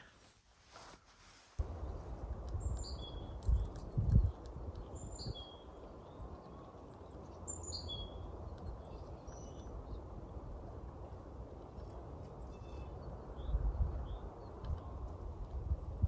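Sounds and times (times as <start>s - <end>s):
low outdoor background noise: 0.0s - 16.0s
songbird calling: 7.4s - 9.8s.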